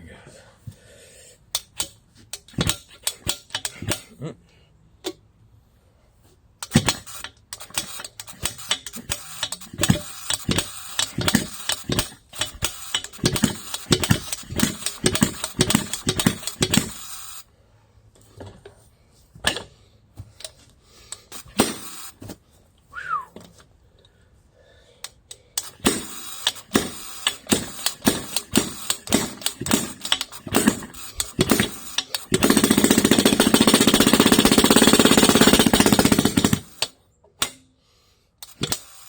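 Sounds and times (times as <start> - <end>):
jackhammer hammering: 6.6 - 17.4, 21.3 - 22.1, 25.6 - 37.6, 38.4 - 39.0.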